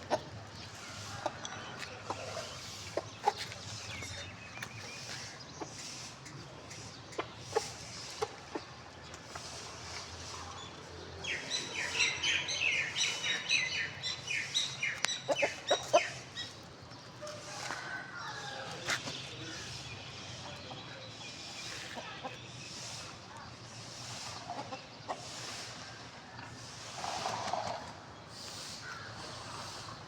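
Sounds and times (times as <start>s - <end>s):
chickens clucking: 0.0s - 10.6s, 11.3s - 18.0s, 21.6s - 23.2s, 24.0s - 25.8s.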